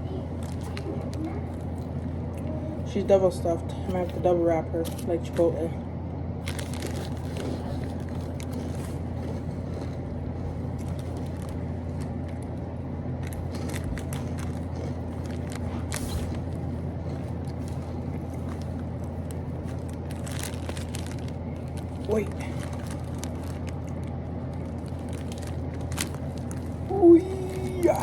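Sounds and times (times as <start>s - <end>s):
steady low hum: 0.0s - 28.0s
tortilla wrap rustling: 6.4s - 28.0s.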